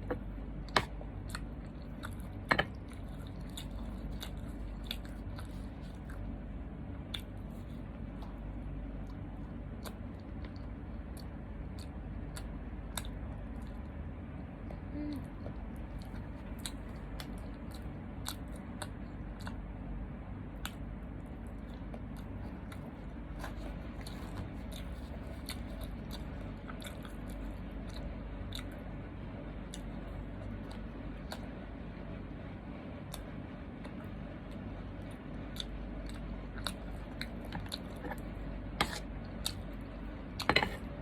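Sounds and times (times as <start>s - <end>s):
person chewing and eating: 0.0s - 19.8s, 20.5s - 31.7s, 33.0s - 41.0s
steady low hum: 0.0s - 41.0s.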